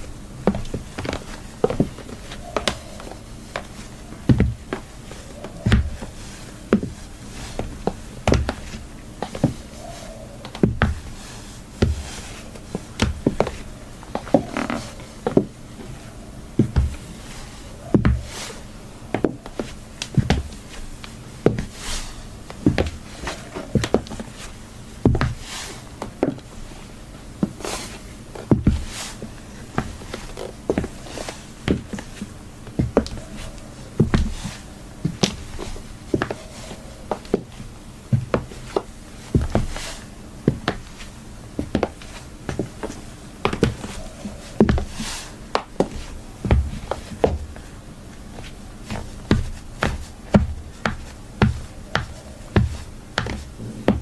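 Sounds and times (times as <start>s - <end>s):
high heels clacking on hard floor: 0.4s - 11.2s, 11.8s - 16.0s, 17.9s - 18.4s, 19.1s - 21.7s, 22.5s - 24.3s, 25.0s - 25.4s, 32.7s - 39.8s, 40.4s - 54.0s.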